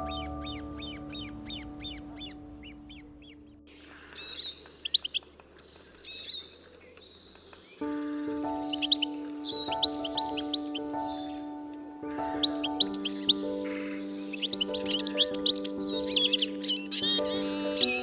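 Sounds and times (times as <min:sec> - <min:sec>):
music: 0:00.0 - 0:03.8, 0:07.8 - 0:18.0
loud whistled bird calls: 0:00.0 - 0:11.4, 0:12.2 - 0:18.0
birds chirping and trilling: 0:00.0 - 0:18.0
repeated bird calls: 0:00.0 - 0:18.0.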